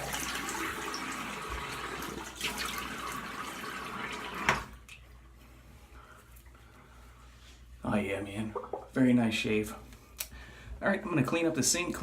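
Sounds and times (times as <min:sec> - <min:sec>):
water running from sink tap: 0:00.0 - 0:04.9.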